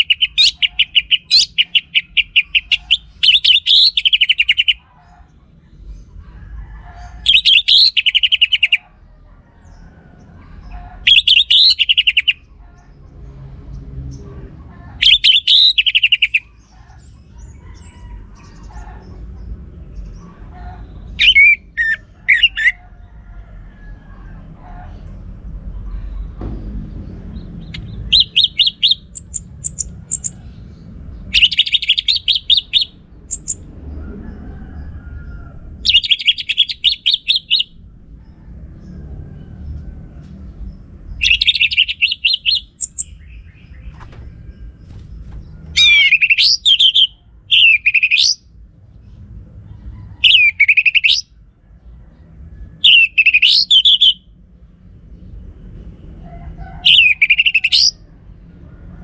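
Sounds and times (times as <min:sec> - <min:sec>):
thrush singing: 0:00.0 - 0:04.9, 0:11.0 - 0:12.4, 0:15.0 - 0:16.5, 0:27.6 - 0:30.5, 0:31.3 - 0:33.7, 0:35.8 - 0:37.8, 0:41.2 - 0:44.8, 0:45.4 - 0:48.4.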